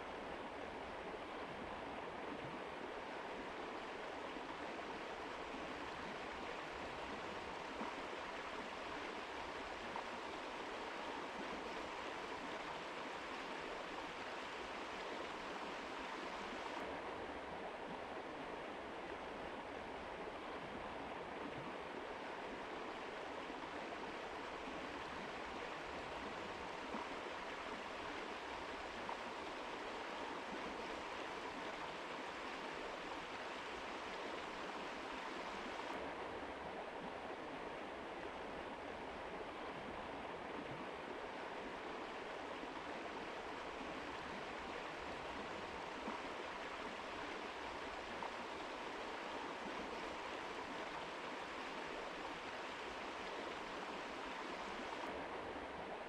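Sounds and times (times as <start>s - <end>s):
river rushing: 22.0s - 56.0s.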